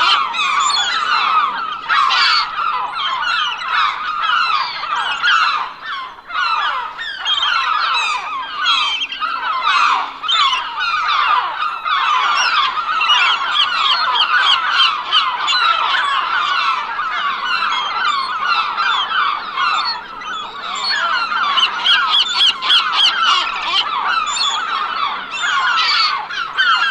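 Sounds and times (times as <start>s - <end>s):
flock of gulls squawking: 0.0s - 26.9s.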